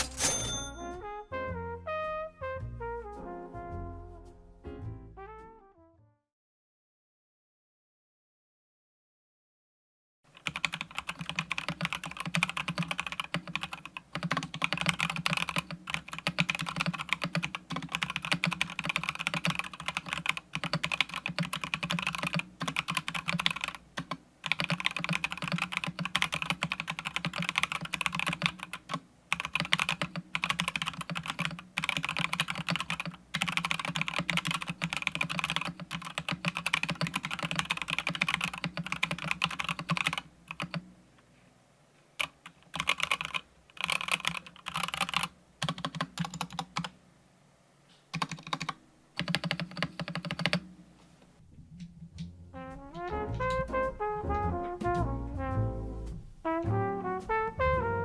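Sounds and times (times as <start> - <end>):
mechanical keyboard keystroke clacks: 10.4 - 40.8, 42.2 - 46.9, 48.2 - 50.6.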